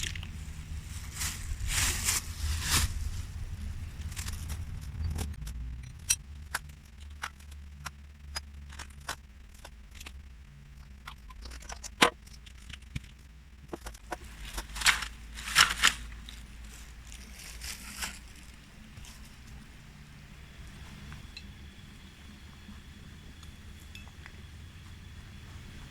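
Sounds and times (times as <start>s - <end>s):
wood snapping and cracking: 4.0s - 19.6s.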